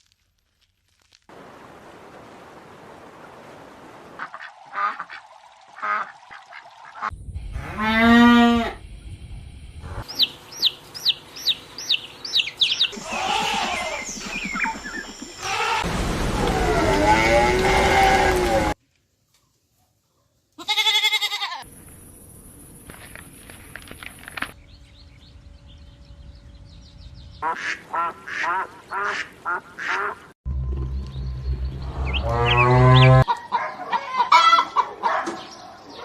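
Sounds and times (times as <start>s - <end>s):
loud pitched animal call: 12.9s - 14.8s.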